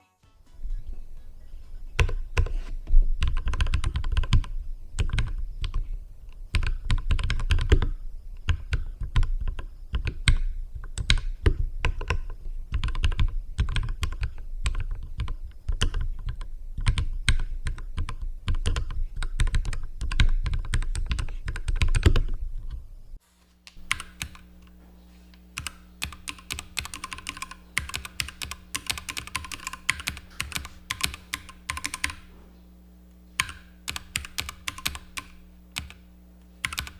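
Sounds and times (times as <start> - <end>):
faint steady hum: 0.0 - 36.9
fast typing on mechanical keyboard: 3.2 - 5.9, 6.5 - 22.3, 23.8 - 24.4, 25.6 - 32.3, 33.4 - 36.0, 36.6 - 36.9.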